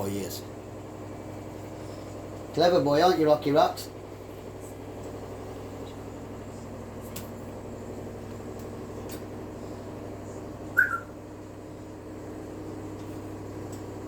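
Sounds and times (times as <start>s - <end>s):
steady low hum: 0.0s - 14.0s
parrot two-part whistle: 10.7s - 11.2s.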